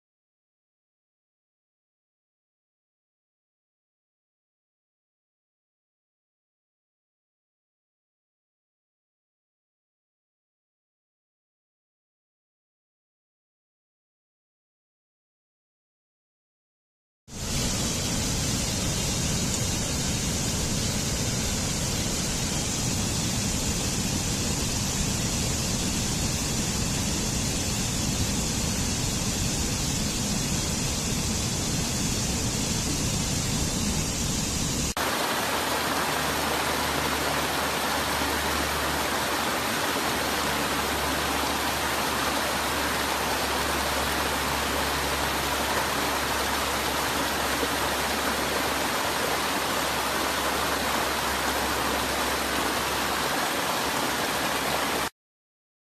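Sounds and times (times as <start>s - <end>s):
hissing water: 17.3s - 55.1s
waterfall rushing: 17.4s - 55.1s.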